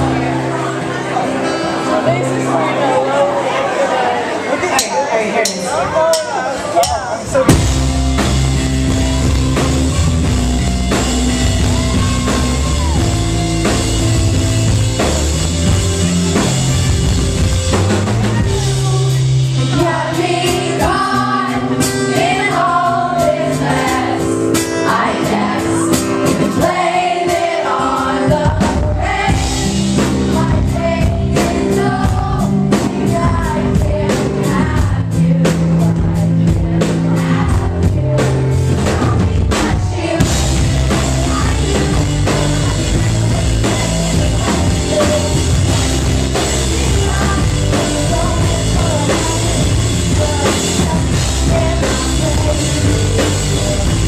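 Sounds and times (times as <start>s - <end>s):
live pop-rock band: 0.0s - 54.0s
woman singing: 18.3s - 24.0s, 26.6s - 54.0s.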